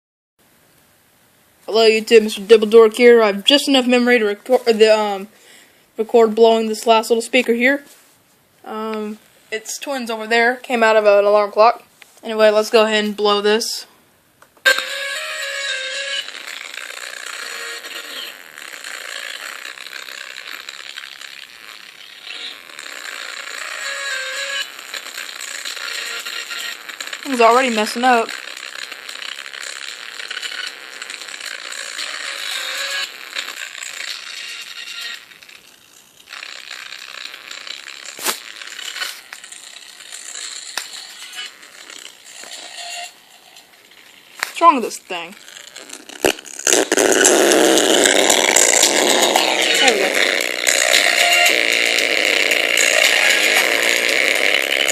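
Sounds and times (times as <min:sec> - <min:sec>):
distorted speaker buzz: 0:14.6 - 0:54.9.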